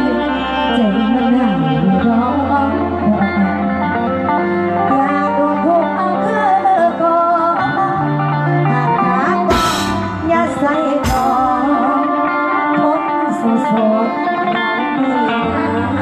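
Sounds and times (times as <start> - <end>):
sustained melody notes: 0.0 - 13.6
steady bass line: 8.2 - 12.1.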